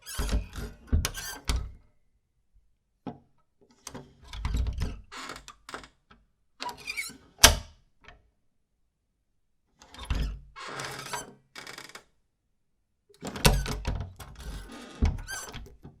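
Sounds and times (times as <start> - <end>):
wooden door creaking: 0.1 - 1.8, 4.4 - 5.9, 13.2 - 15.9.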